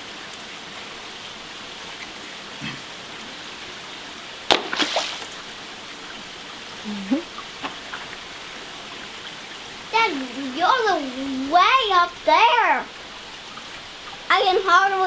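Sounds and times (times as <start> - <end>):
running water rushing: 0.0 - 15.0
splashing clatter: 4.5 - 5.6.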